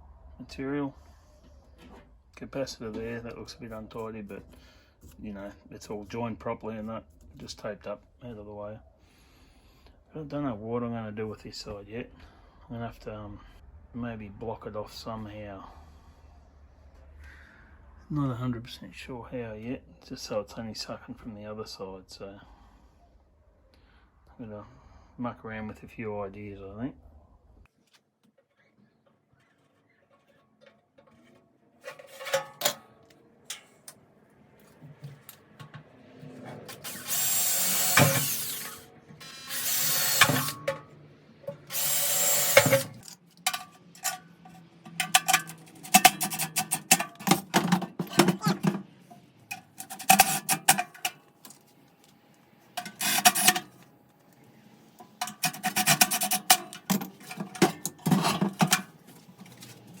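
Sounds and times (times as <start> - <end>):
drill hissing on sheet metal: 36.7 - 40.8, 41.6 - 43.0, 52.8 - 53.7.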